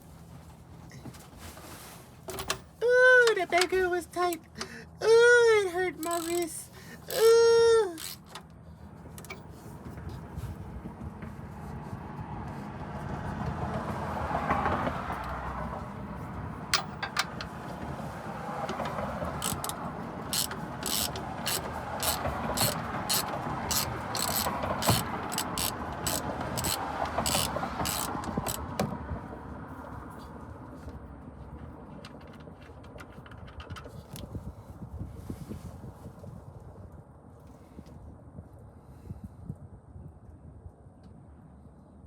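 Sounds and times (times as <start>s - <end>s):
hand tools clicking and clattering: 6.0s - 8.5s, 16.7s - 17.8s, 18.6s - 28.7s.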